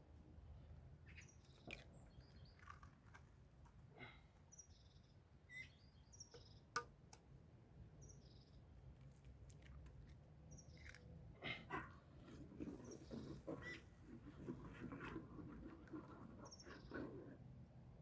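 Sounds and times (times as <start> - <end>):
bird chirps: 4.5 - 6.7.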